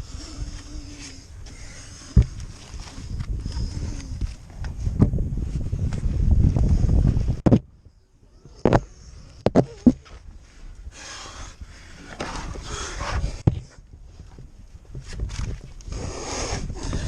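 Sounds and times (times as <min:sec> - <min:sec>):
person breathing hard: 0:00.0 - 0:04.3, 0:10.8 - 0:13.4
boots and hands knocking on stone: 0:09.5 - 0:10.0.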